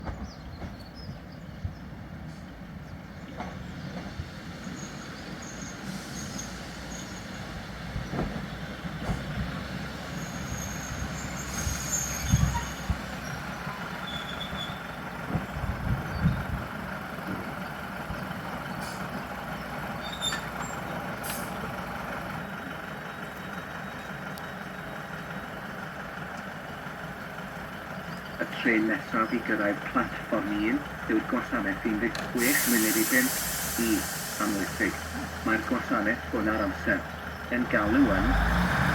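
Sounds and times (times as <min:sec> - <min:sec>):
diesel train engine running: 0:00.0 - 0:38.9
high squeals: 0:10.2 - 0:12.9, 0:14.0 - 0:14.9.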